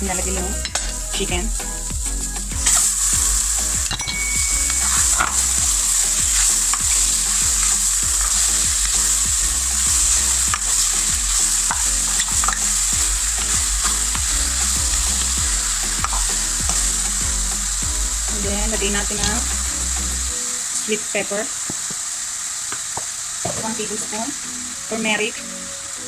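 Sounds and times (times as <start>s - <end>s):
food sizzling in oil: 0.0s - 26.0s.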